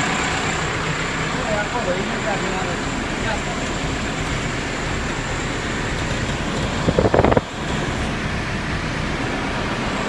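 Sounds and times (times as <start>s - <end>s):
engine running: 0.0s - 10.0s.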